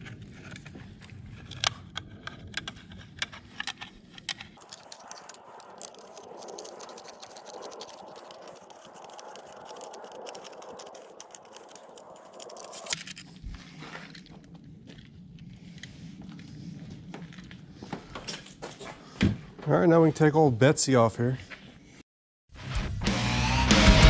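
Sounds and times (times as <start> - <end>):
scraping rattle with rapid ticks: 2.5 - 13.0.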